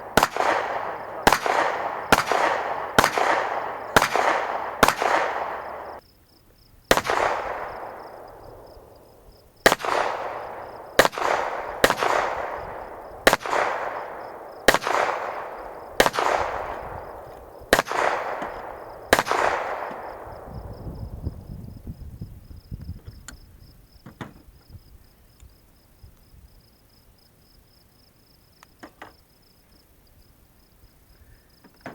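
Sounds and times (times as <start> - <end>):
gunshots with echo: 0.0 - 6.0, 6.9 - 9.0, 9.6 - 20.7
faint insect trill: 5.6 - 31.9.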